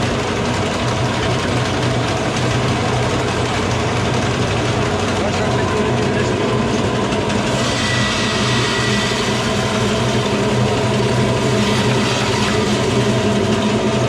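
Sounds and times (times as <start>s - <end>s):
mill machine hum: 0.0s - 14.0s
grinding hiss: 7.0s - 14.0s.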